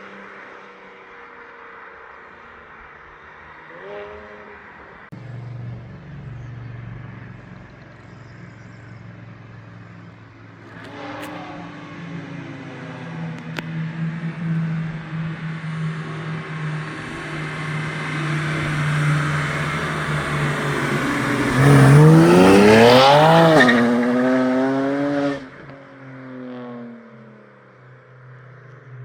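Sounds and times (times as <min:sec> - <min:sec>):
car exhaust at low revs: 0:05.2 - 0:25.4.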